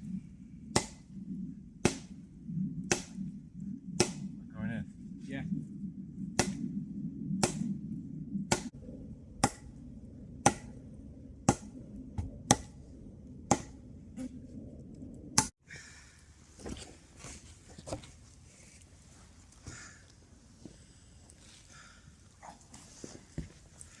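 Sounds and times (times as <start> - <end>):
chopping blows on wood: 0.7 - 1.0, 1.8 - 2.1, 2.8 - 3.2, 4.0 - 4.3, 6.4 - 6.6, 7.4 - 7.7, 8.5 - 8.7, 10.4 - 10.7, 11.5 - 11.7, 12.5 - 12.7, 13.5 - 13.7.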